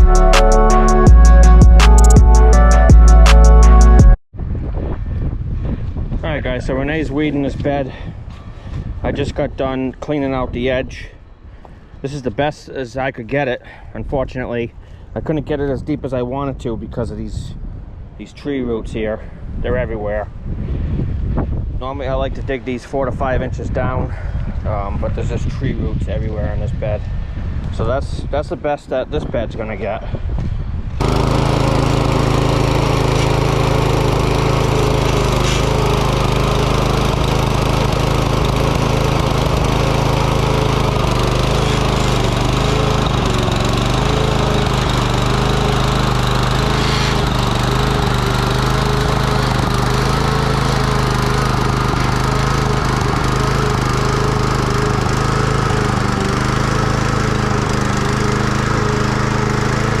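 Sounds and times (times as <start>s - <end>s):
small engine running under load: 31.0s - 60.0s.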